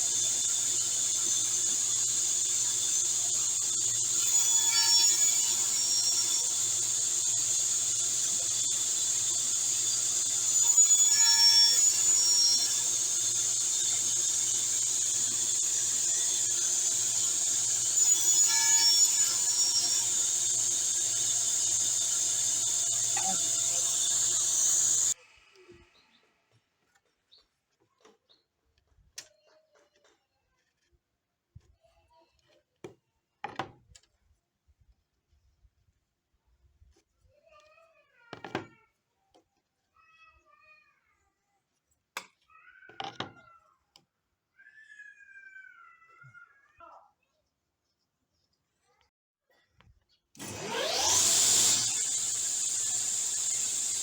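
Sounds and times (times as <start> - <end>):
high whining sawing: 0.0 - 25.2, 50.4 - 54.0
table saw motor running: 0.0 - 25.2, 50.4 - 54.0.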